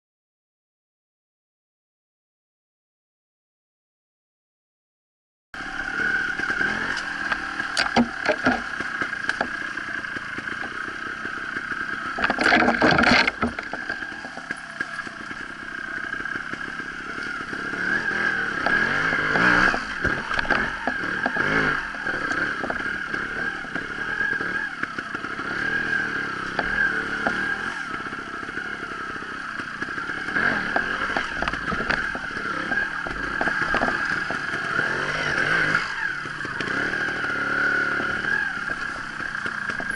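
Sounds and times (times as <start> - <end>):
motorcycle engine revving: 5.6 - 39.9
clattering and scraping knocks: 7.7 - 9.6, 12.1 - 14.7.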